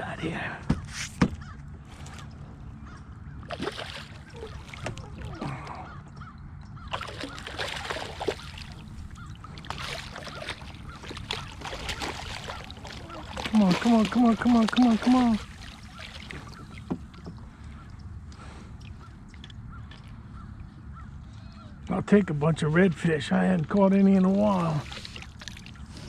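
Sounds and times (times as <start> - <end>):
low background hum: 0.0 - 26.0
harsh crow-like bird calls: 0.7 - 3.6, 5.7 - 13.7, 15.4 - 18.0, 18.9 - 21.8.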